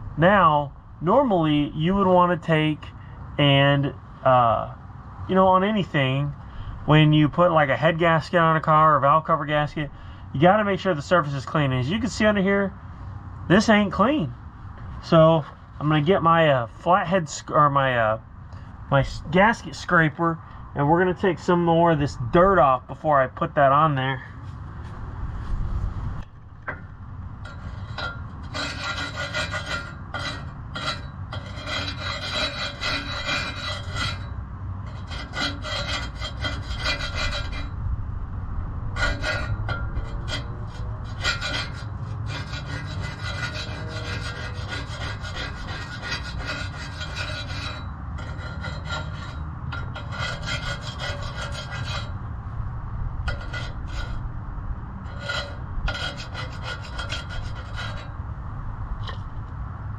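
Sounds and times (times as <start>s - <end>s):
scraper scraping metal pipe: 6.9s - 12.7s, 13.5s - 18.1s, 19.0s - 24.2s, 26.3s - 37.8s, 38.8s - 52.4s, 53.2s - 54.4s, 55.0s - 58.3s.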